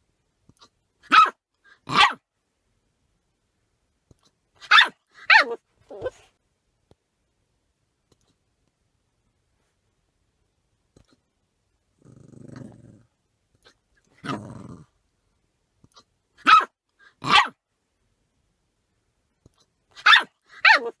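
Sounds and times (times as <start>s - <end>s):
puppy barking high-pitched: 1.0s - 2.3s, 4.6s - 6.3s, 16.4s - 17.6s, 19.9s - 21.0s
puppy growling: 12.0s - 15.0s.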